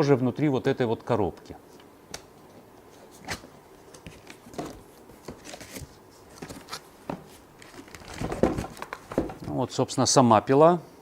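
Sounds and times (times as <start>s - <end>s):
cardboard rustling: 3.1s - 9.6s.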